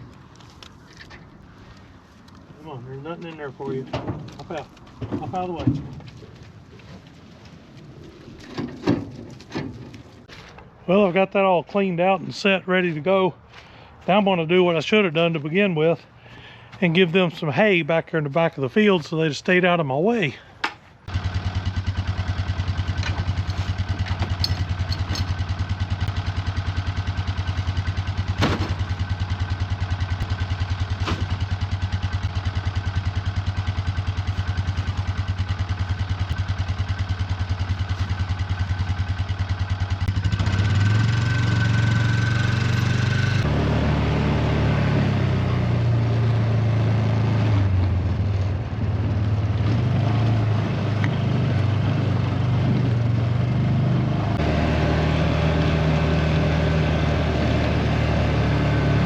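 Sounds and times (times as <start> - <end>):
tractor engine running: 21.0 - 59.0
sharp metal clanks: 24.0 - 25.4.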